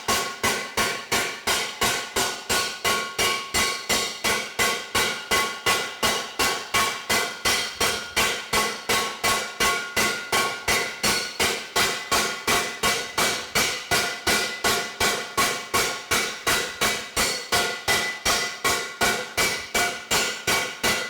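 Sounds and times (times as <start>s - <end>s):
slapper striking sheet metal: 6.5s - 21.0s.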